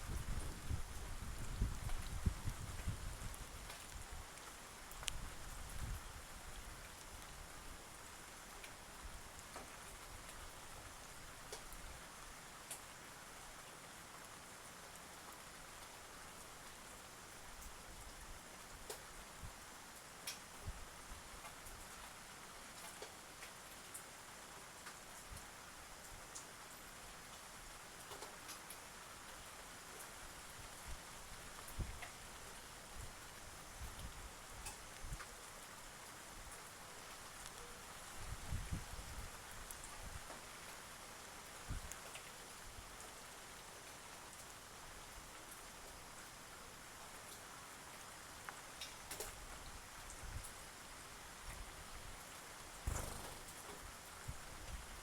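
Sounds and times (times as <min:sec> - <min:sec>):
steady hiss: 0:00.0 - 0:55.0
light ticks: 0:01.8 - 0:06.0, 0:08.5 - 0:10.5, 0:11.5 - 0:11.8, 0:18.8 - 0:19.1, 0:20.0 - 0:20.7, 0:21.4 - 0:24.0, 0:28.0 - 0:30.2, 0:31.6 - 0:32.2, 0:33.8 - 0:35.5, 0:36.5 - 0:38.2, 0:41.8 - 0:43.2, 0:48.4 - 0:50.6
bird pecking at seed: 0:52.9 - 0:53.8.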